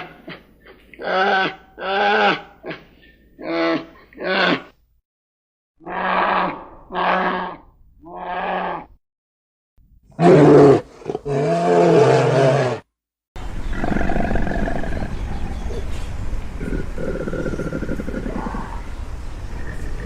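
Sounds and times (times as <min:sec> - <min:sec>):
large wild animal calling: 0:05.8 - 0:09.0, 0:16.6 - 0:20.0
steady outdoor noise: 0:13.4 - 0:20.0.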